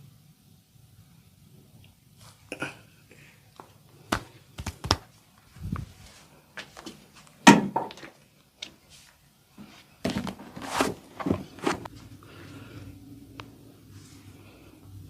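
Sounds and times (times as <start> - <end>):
hands tapping and slapping skin: 3.6 - 5.1
hands rubbing skin: 3.6 - 7.2.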